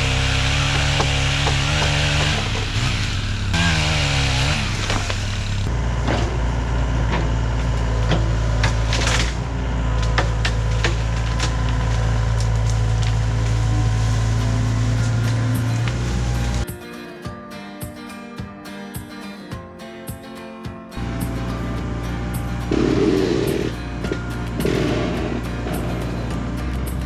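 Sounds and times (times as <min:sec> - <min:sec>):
small saw engine revving: 0:00.0 - 0:06.0, 0:21.0 - 0:27.0
branches and wood cracking: 0:00.0 - 0:06.2, 0:07.2 - 0:16.6
excavator diesel engine: 0:00.0 - 0:16.6, 0:21.0 - 0:27.0.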